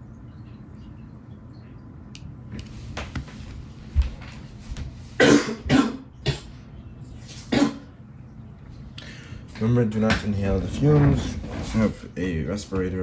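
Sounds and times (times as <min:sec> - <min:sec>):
man coughing: 0:05.2 - 0:06.6, 0:07.5 - 0:07.9.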